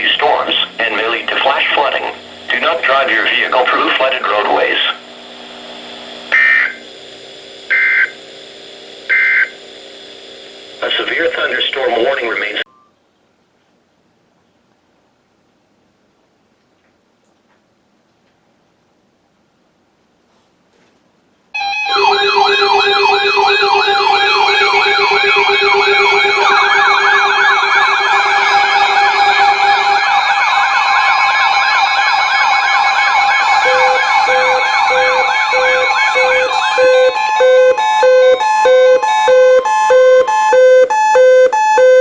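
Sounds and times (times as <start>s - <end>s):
electronic sirens yelping: 0.0s - 5.1s, 6.3s - 6.8s, 7.7s - 8.2s, 9.1s - 9.6s, 21.6s - 42.0s
electronic alarm beeping: 6.3s - 6.8s, 7.7s - 8.2s, 9.1s - 9.6s, 21.6s - 42.0s.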